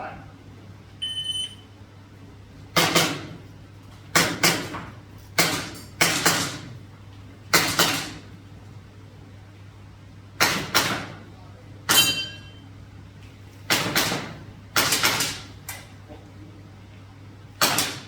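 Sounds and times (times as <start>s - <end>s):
shot timer beep: 1.0s - 1.6s.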